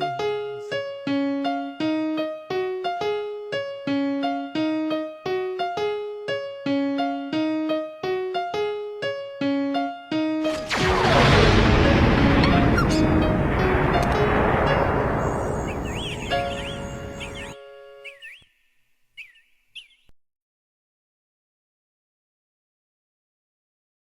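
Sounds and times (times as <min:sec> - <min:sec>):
keyboard melody: 0:00.0 - 0:10.5, 0:12.0 - 0:18.6
loud rush of noise: 0:10.9 - 0:17.4.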